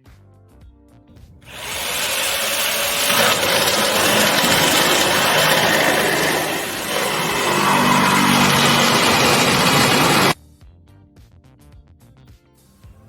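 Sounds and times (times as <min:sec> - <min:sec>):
electric jigsaw cutting board: 0:01.5 - 0:10.4.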